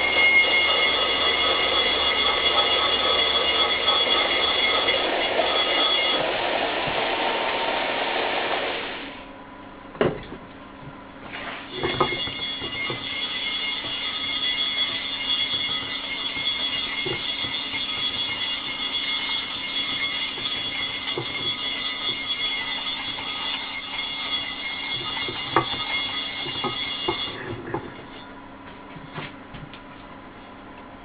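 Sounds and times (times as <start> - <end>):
machine rushing with high whine: 0.0 - 9.3.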